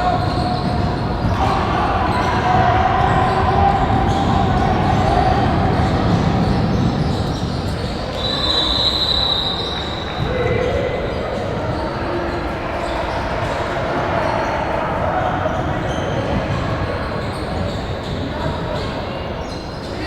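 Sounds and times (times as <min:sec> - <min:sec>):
echoing din of voices: 0:00.0 - 0:20.0.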